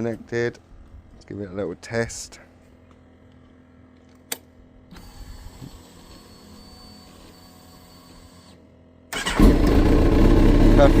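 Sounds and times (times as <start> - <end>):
fuel pump whine: 4.8 - 11.0.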